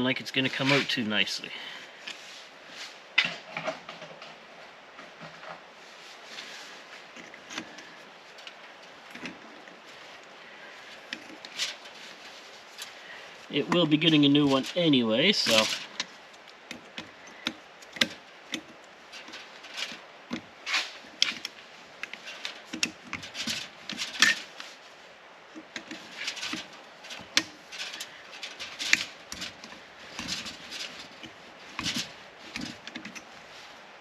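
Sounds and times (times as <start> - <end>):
hand tools clicking and scraping metal: 0.4 - 1.0, 6.9 - 24.9, 25.5 - 33.8.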